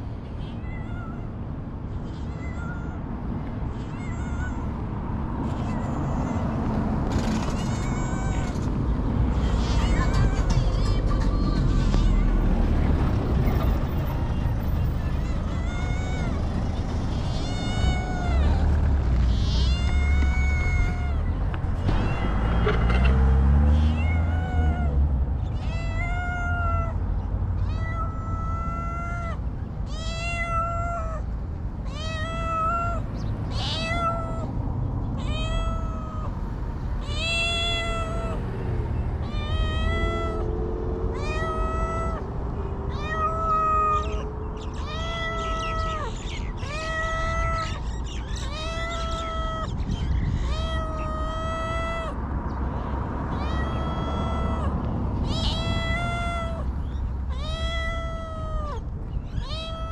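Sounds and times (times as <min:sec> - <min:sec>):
cat meowing: 0:00.3 - 0:01.3, 0:02.0 - 0:03.1, 0:03.7 - 0:04.8, 0:05.4 - 0:22.9, 0:23.7 - 0:27.0, 0:27.6 - 0:38.6, 0:39.2 - 0:40.5, 0:41.1 - 0:42.3, 0:42.9 - 0:59.9
steady low rumble: 0:06.7 - 0:26.8.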